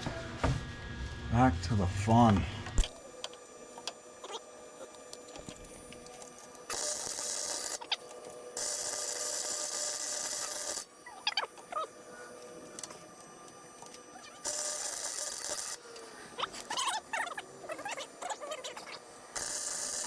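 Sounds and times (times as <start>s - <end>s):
mig welder crackling hiss: 5.0s - 11.4s, 13.8s - 17.4s.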